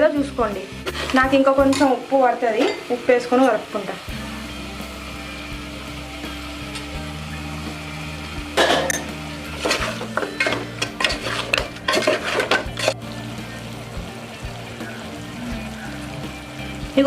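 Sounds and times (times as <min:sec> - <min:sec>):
metal spoon scraping a pot: 0:08.7 - 0:13.0.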